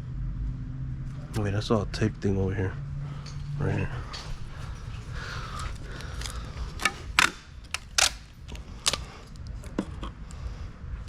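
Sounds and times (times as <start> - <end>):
steady low rumble: 0.0 - 11.0
sharp clicks and knocks: 6.2 - 9.0.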